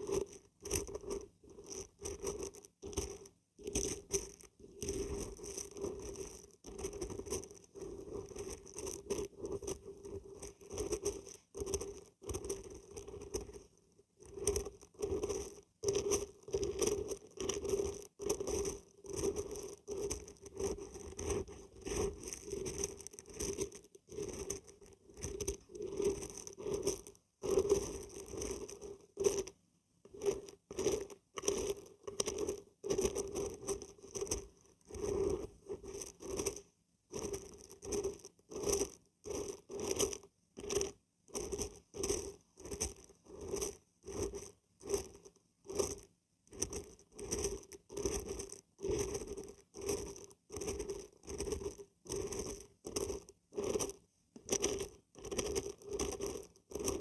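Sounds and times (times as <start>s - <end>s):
dried beans rattling when shaken: 0.0s - 57.0s.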